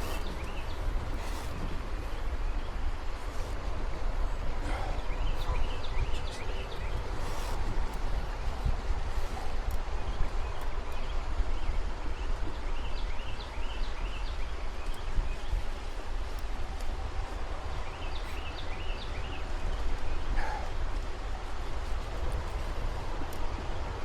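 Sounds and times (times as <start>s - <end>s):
bird chirping: 0.0s - 3.6s, 4.4s - 16.8s
wind rumbling on microphone: 0.0s - 24.0s.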